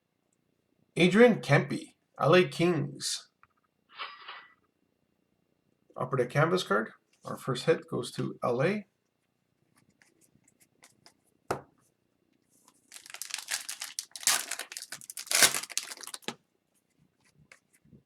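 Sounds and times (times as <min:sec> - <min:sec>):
foil wrapper tearing and crinkling: 0:12.9 - 0:16.4.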